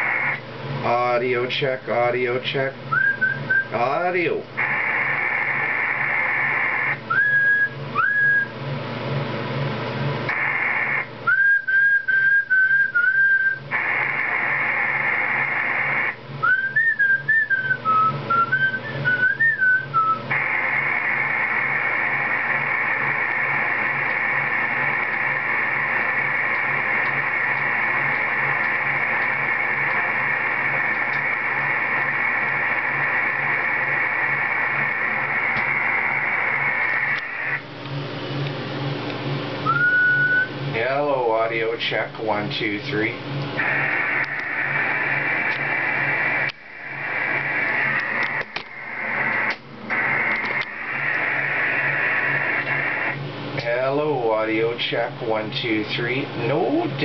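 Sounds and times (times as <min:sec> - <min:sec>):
radio static hiss: 0:00.0 - 0:08.5, 0:10.2 - 0:57.0
low hum: 0:00.0 - 0:57.0
person whistling over radio: 0:02.9 - 0:03.8, 0:06.4 - 0:08.6, 0:10.4 - 0:14.6, 0:15.5 - 0:20.4, 0:39.6 - 0:40.6.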